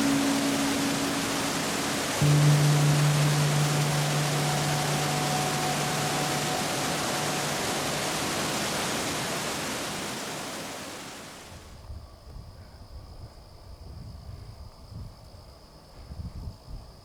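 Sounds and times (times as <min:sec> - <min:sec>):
faint high-pitched tone: 0:00.0 - 0:10.1
waterfall rushing: 0:00.0 - 0:11.5.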